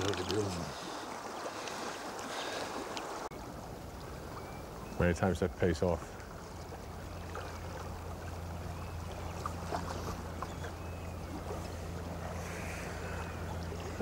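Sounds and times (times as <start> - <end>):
river water rushing: 0.0 - 4.8
low hum: 6.0 - 14.0.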